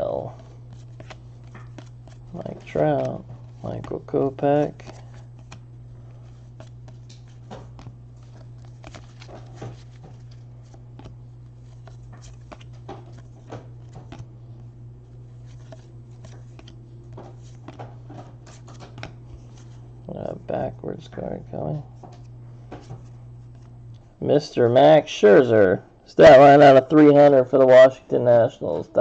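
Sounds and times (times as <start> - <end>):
steady low hum: 0.0 - 29.0
cards clicking and rustling: 0.3 - 19.8.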